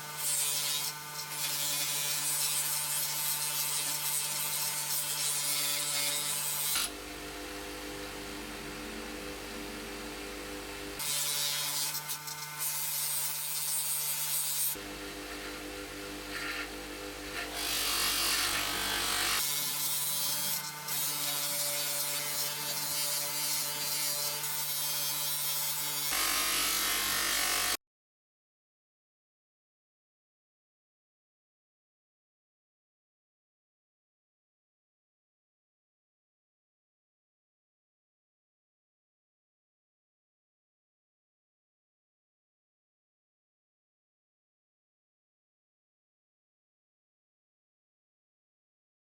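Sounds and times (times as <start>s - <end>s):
power tool grinding metal: 0.0s - 7.0s, 11.0s - 15.5s, 16.3s - 27.8s.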